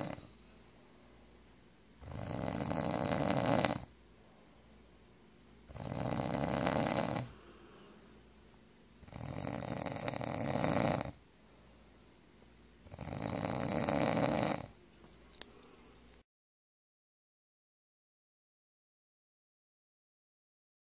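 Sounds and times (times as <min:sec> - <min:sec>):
rasping snores: 0:00.0 - 0:00.3, 0:02.0 - 0:03.9, 0:05.7 - 0:07.4, 0:09.0 - 0:11.2, 0:12.8 - 0:14.8.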